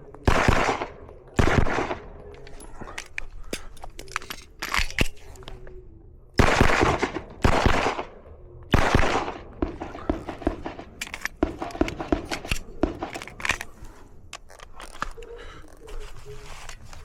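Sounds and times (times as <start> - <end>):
gunshot with echo: 6.4 - 13.1.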